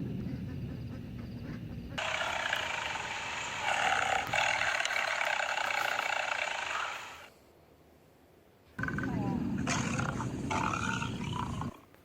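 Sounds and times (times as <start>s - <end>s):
big cat roaring: 8.8s - 11.8s.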